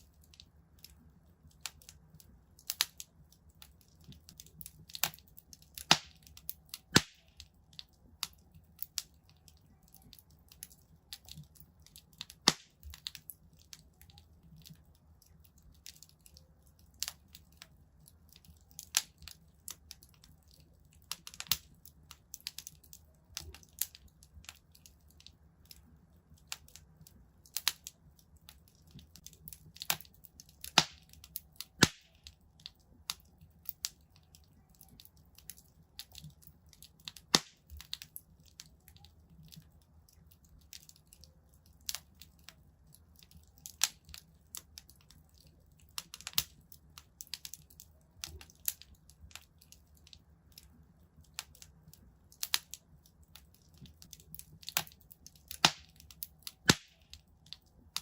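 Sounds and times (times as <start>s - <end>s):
low rumble of flames: 0.0s - 58.0s
wood fire crackling and popping: 0.0s - 58.0s.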